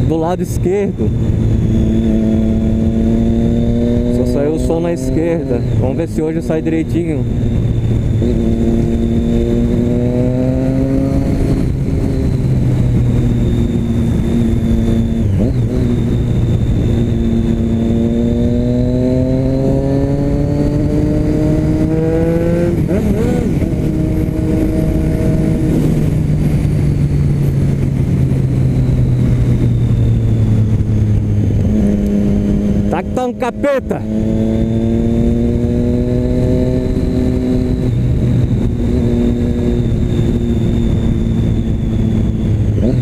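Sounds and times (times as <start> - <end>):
motorcycle engine accelerating: 0.0 - 43.0
steady rushing noise: 0.0 - 43.0.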